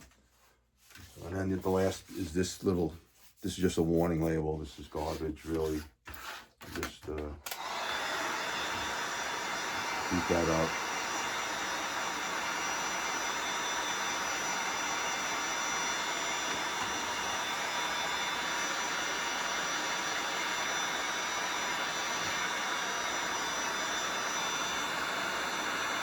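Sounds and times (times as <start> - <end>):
heat gun blowing air: 7.5 - 26.0.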